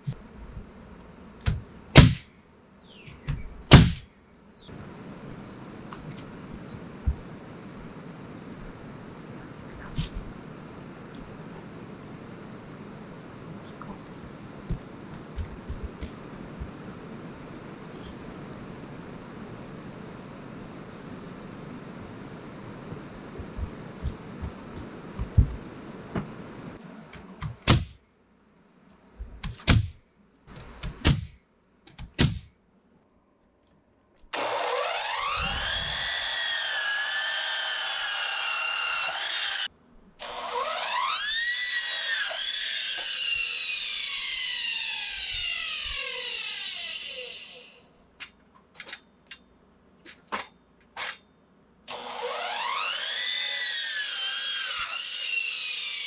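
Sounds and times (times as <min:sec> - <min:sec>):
sharp knocks: 0:01.4 - 0:02.3, 0:03.2 - 0:04.1, 0:23.5 - 0:26.3, 0:27.4 - 0:28.0, 0:29.4 - 0:30.0, 0:30.8 - 0:32.5
power tool motor whining: 0:34.3 - 0:47.8, 0:51.9 - 0:56.0.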